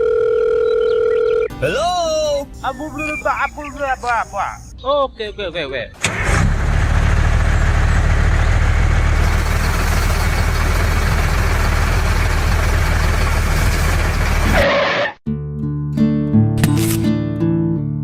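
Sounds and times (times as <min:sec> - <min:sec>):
small tractor engine running: 0:06.0 - 0:14.6.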